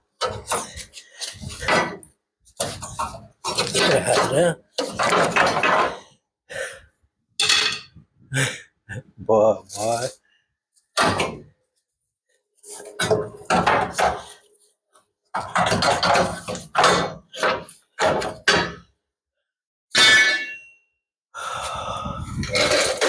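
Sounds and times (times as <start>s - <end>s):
metal clunks and knocks: 1.4s - 6.0s, 11.0s - 11.5s, 12.9s - 14.3s, 15.4s - 18.9s
ringing metal clang: 20.0s - 20.8s.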